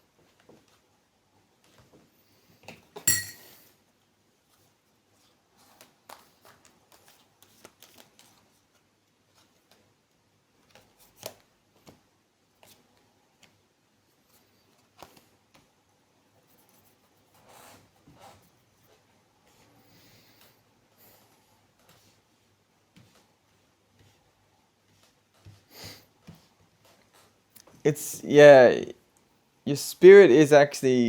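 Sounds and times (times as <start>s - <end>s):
cards rustling: 5.7s - 8.5s.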